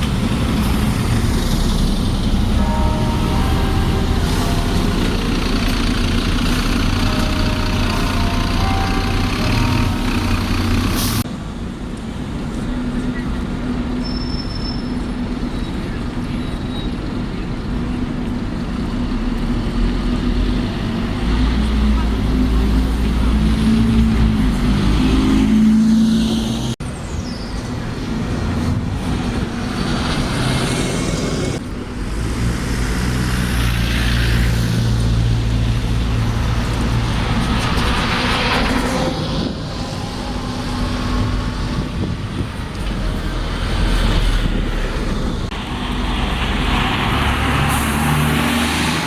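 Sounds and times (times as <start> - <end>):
vehicles passing: 0.0 - 14.1, 14.7 - 49.0.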